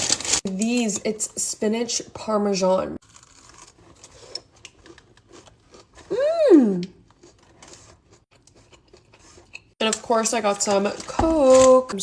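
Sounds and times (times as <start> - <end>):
food packaging rustling: 0.0 - 0.6, 7.1 - 12.0
woman's wordless exclamation: 6.1 - 7.0.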